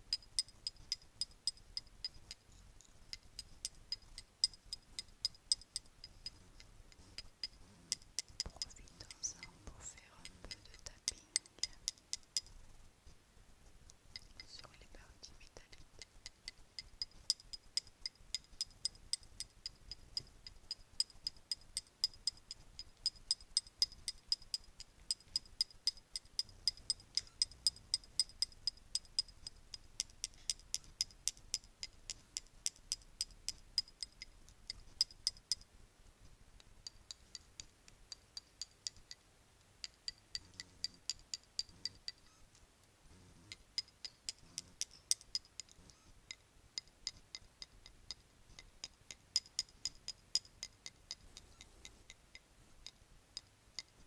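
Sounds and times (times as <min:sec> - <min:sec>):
bracelets clicking: 0:43.5 - 0:54.0.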